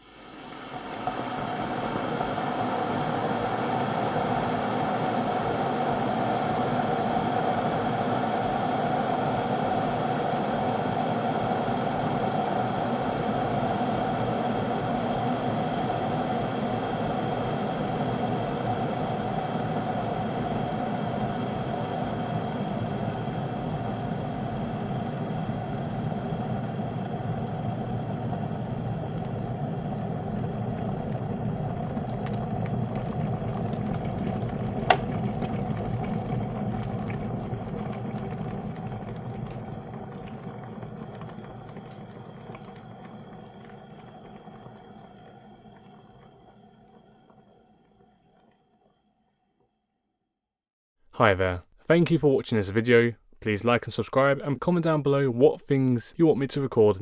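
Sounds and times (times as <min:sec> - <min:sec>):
electric kettle boiling water: 0:00.0 - 0:49.7.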